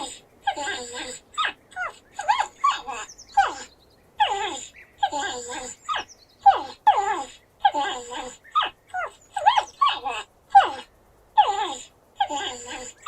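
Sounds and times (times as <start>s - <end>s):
porcupine grunting: 0.0s - 2.0s, 10.0s - 13.0s
porcupine whining calls: 0.0s - 13.0s.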